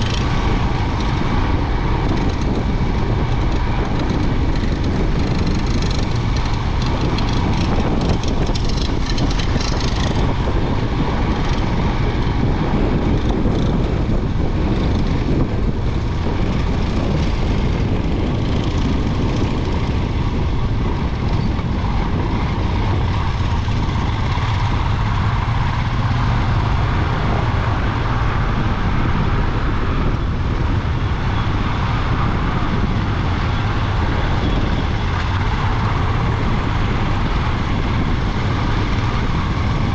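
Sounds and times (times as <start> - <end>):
motorcycle engine running: 0.0 - 39.9
steady rush of noise: 0.0 - 39.9
clatter of fine clicks: 3.4 - 10.3.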